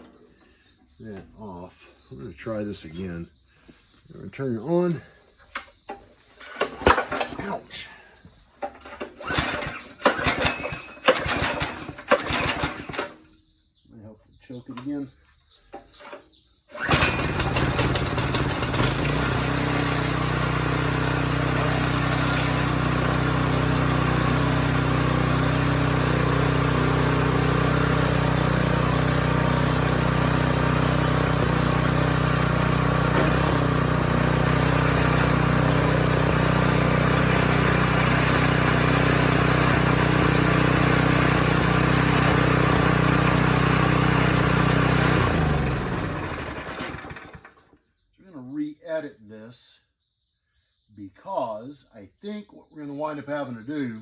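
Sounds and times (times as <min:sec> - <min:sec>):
small engine pull-started and running: 0:05.5 - 0:08.0, 0:08.6 - 0:13.5, 0:15.7 - 0:48.0.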